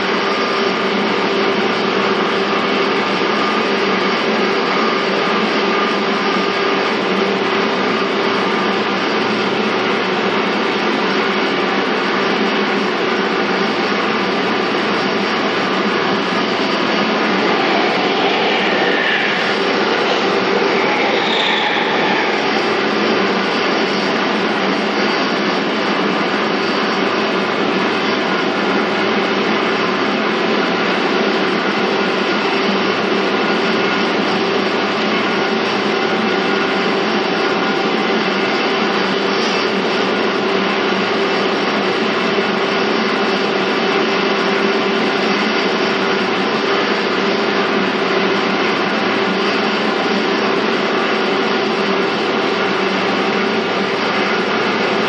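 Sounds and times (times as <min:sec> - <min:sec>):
even rushing noise: 0:15.1 - 0:25.2.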